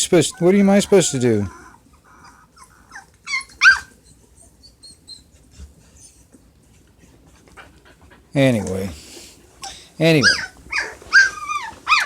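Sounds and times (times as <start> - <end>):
puppy whining cry: 0.0 - 6.3, 9.6 - 12.0
puppies whimpering and squeaking: 0.0 - 6.5, 8.4 - 9.0, 9.6 - 12.0.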